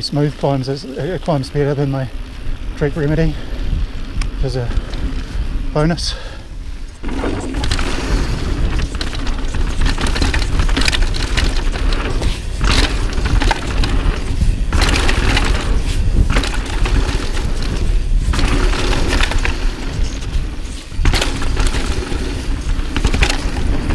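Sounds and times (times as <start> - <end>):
bike rattling: 0.0 - 23.9
wind on microphone: 1.0 - 23.9
tyres crunching over dirt and rocks: 6.6 - 23.9.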